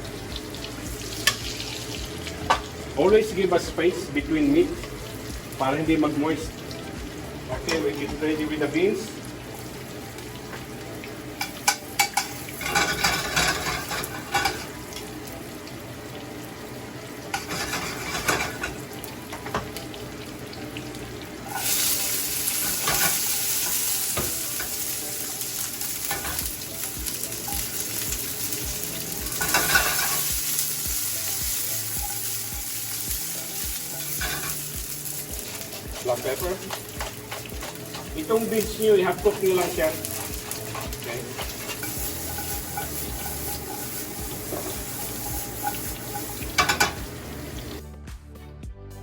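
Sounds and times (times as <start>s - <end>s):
food sizzling in hot oil: 0.0s - 47.8s
utensil clinking in frying pan: 11.4s - 15.1s, 17.3s - 19.7s, 21.5s - 47.6s.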